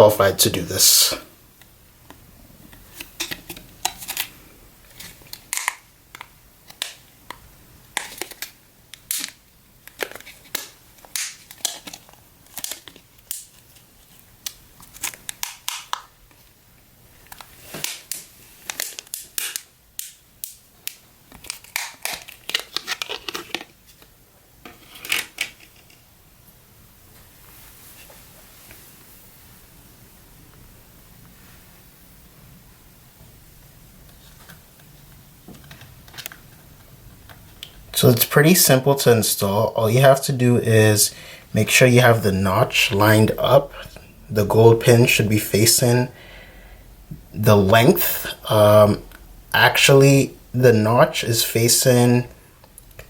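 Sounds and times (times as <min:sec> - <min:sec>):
clicks and rustles of handling parts: 0:01.6 - 0:16.5, 0:17.2 - 0:26.1, 0:34.1 - 0:37.8.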